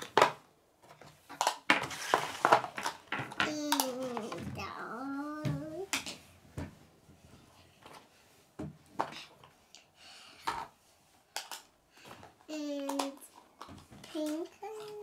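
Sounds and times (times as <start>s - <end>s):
plastic toy pieces clicking: 1.3s - 4.3s, 11.3s - 11.7s, 12.6s - 13.3s.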